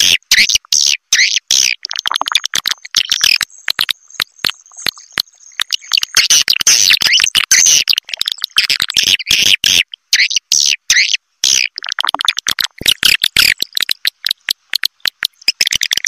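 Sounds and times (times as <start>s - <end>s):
high-pitched bird chirping: 0.0s - 11.8s, 12.8s - 16.0s
rapid sharp clicks: 1.8s - 6.2s, 11.8s - 16.0s.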